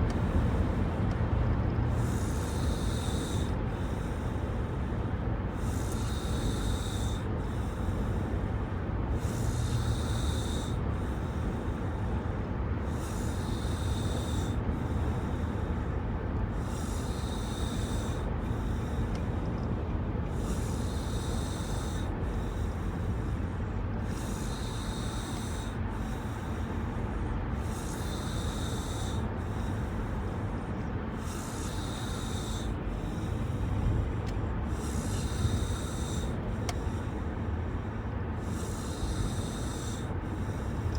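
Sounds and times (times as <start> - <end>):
snoring: 1.8 - 4.7, 5.5 - 8.4, 9.1 - 12.1, 12.8 - 15.9, 16.5 - 19.4, 20.2 - 37.8, 38.4 - 40.9.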